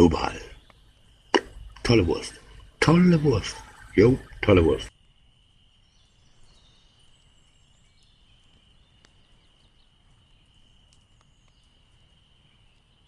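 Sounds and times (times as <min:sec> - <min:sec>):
faint ticks: 0:06.4 - 0:13.0.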